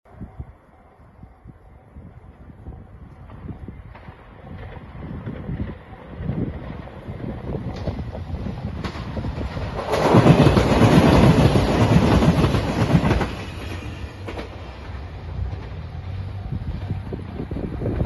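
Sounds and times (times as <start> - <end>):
train rushing past: 0.2 - 18.0.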